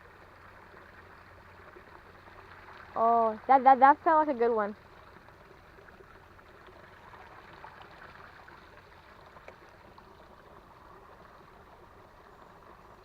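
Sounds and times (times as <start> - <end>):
creek trickling: 0.0 - 13.0
faint ticks: 9.4 - 9.6.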